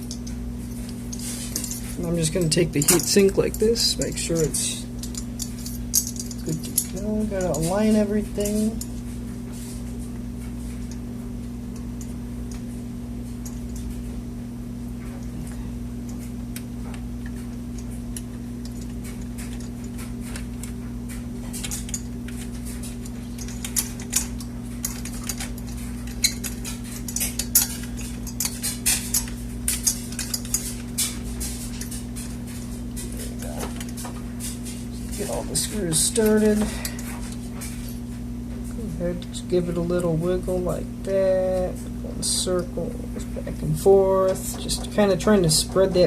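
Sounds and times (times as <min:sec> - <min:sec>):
metal clicking and clinking: 0:00.0 - 0:09.1, 0:16.1 - 0:37.8
steady low hum: 0:00.0 - 0:46.0.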